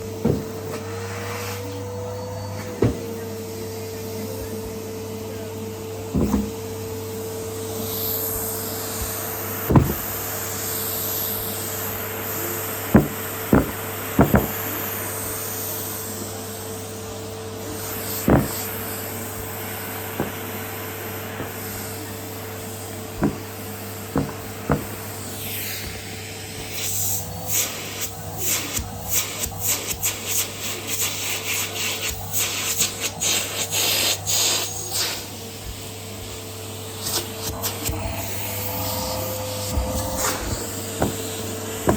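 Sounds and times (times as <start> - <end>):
vacuum cleaner motor whine: 0.0 - 41.9
sharp knocks: 9.7 - 10.1, 13.0 - 14.6, 18.3 - 18.6, 23.2 - 23.5, 24.2 - 25.0.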